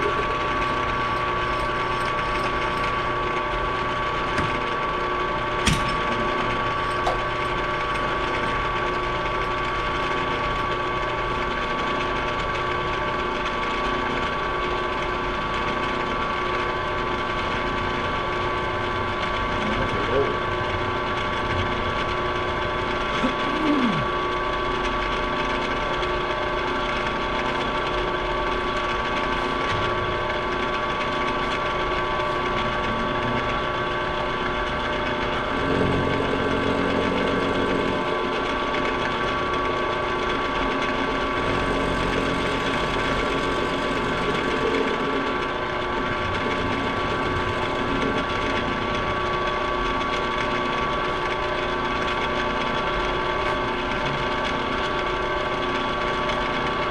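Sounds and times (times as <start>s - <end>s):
milling machine running: 0.0s - 56.9s.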